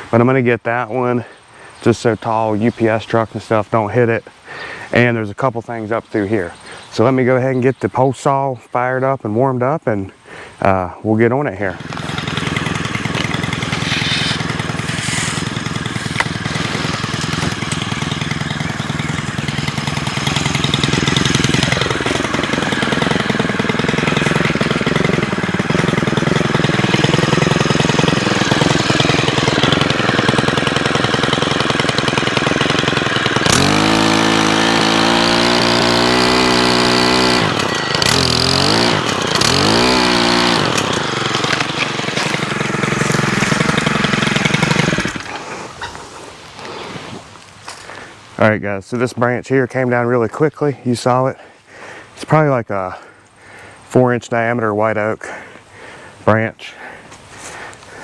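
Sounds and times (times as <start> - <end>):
pole saw engine revving: 11.5 - 47.9.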